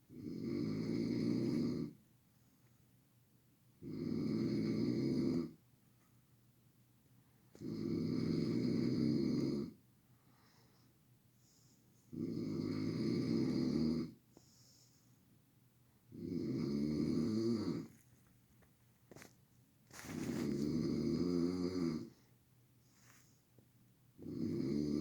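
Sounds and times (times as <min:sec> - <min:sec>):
person snoring loudly: 0:00.1 - 0:01.9, 0:03.8 - 0:05.6, 0:07.6 - 0:09.8, 0:12.1 - 0:14.2, 0:16.1 - 0:17.9, 0:20.3 - 0:22.2, 0:24.2 - 0:25.0
quiet breathing: 0:09.5 - 0:16.2, 0:19.9 - 0:25.0.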